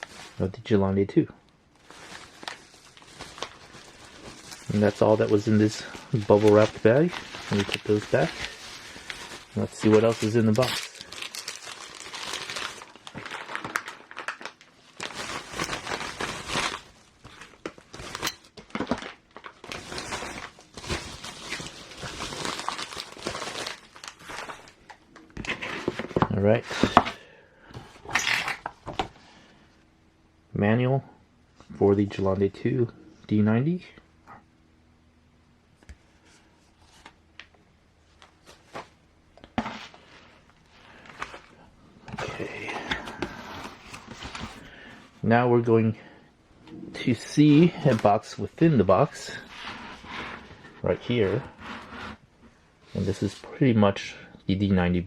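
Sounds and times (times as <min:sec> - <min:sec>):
bubble wrap crinkling: 0:00.0 - 0:00.5, 0:01.8 - 0:27.0
rummaging through box: 0:01.8 - 0:14.4, 0:15.0 - 0:24.7
packaging clicks and rustles: 0:01.8 - 0:27.2.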